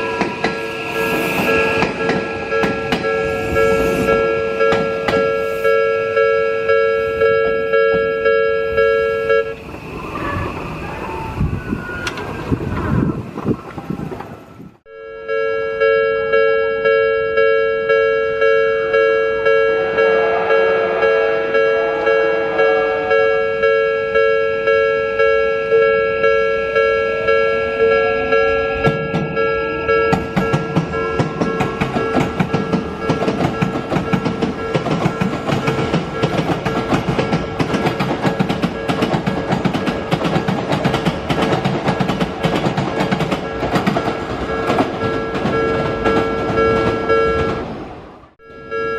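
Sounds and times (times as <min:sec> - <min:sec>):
level crossing warning bell: 0:00.0 - 0:09.6, 0:14.9 - 0:48.9
electric train motor whine: 0:00.0 - 0:33.1
train wheels clattering over joints: 0:30.1 - 0:47.6.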